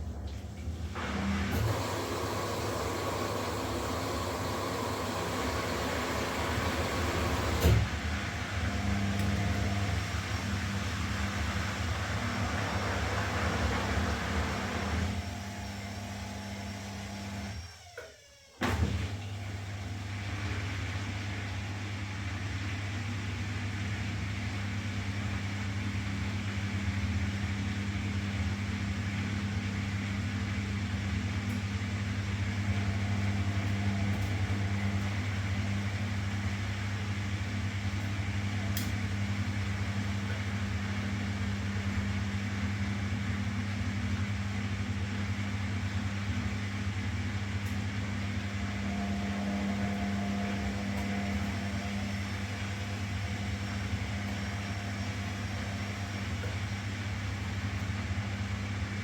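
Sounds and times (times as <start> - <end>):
washing machine running: 0.0 - 59.0.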